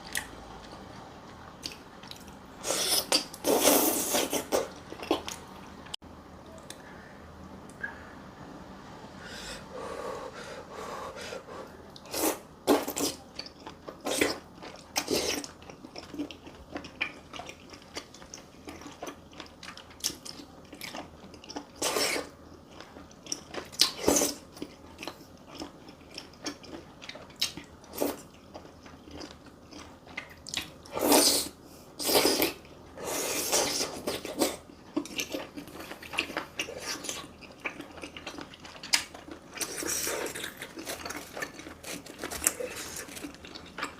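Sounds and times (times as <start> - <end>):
chewing and biting food: 12.7 - 30.9, 32.0 - 43.9.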